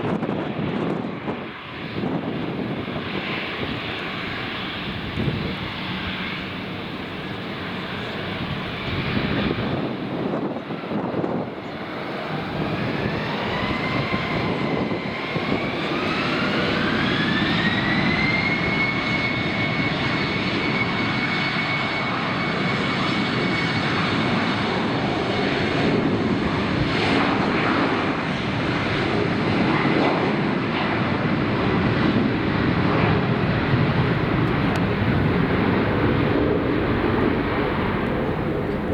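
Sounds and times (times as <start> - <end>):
jet engines spooling up: 11.6 - 24.3, 31.3 - 38.9.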